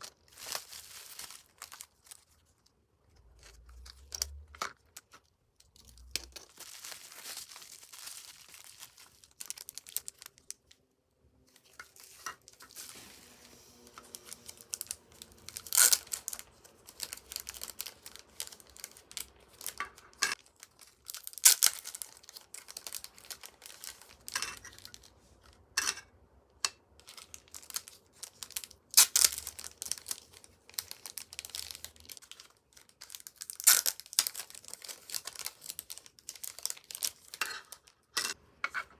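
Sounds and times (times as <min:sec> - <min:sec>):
packaging rustling: 0:00.0 - 0:10.8, 0:11.5 - 0:25.2, 0:27.0 - 0:38.0
packaging ripping: 0:00.1 - 0:02.3, 0:05.8 - 0:10.6, 0:12.0 - 0:25.0, 0:27.1 - 0:37.9.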